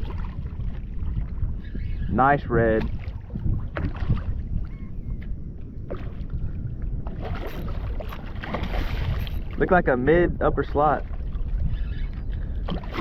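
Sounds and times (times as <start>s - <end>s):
wind rumbling on microphone: 0.0s - 13.0s
water splashing: 7.1s - 9.6s, 12.6s - 13.0s.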